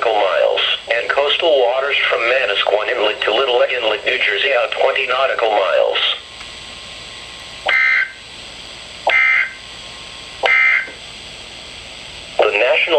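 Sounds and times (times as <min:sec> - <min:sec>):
broadcast hiss: 0:00.0 - 0:12.9
buzzy two-tone data bursts: 0:07.7 - 0:08.2, 0:09.1 - 0:09.6, 0:10.4 - 0:10.9.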